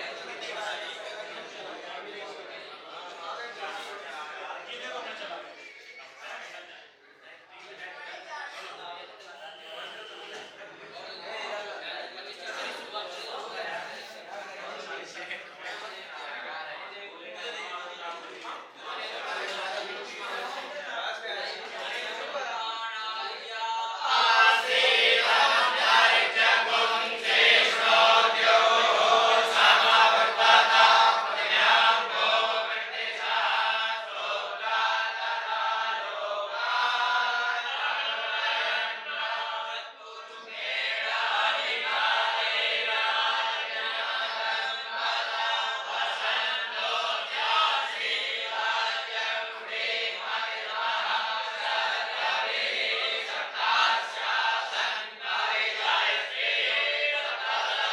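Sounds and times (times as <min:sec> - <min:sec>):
group chanting together: 0:18.2 - 0:57.9.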